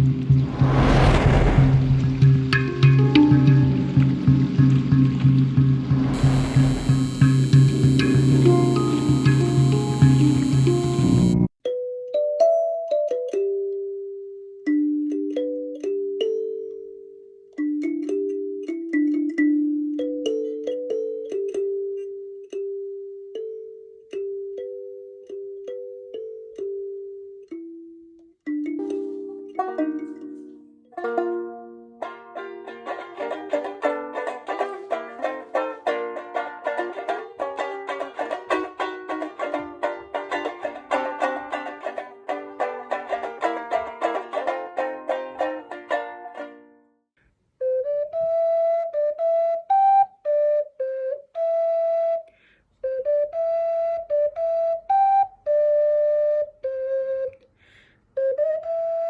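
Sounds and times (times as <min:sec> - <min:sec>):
plucked instrument playing fast: 0:32.0 - 0:46.7
flute-like melody: 0:47.6 - 0:57.4, 0:58.2 - 0:59.0.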